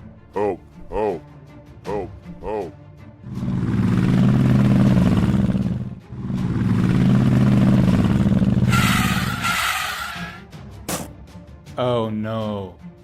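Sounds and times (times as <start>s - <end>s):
vehicle engine revving: 3.3s - 10.4s
hiss with high squeal: 8.7s - 10.4s.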